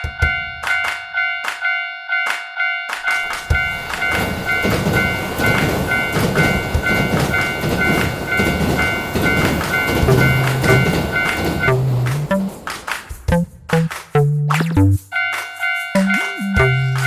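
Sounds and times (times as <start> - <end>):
railroad crossing bell ringing: 0.0 - 12.9, 15.1 - 17.0
train wheels rumbling and clattering: 3.0 - 13.8.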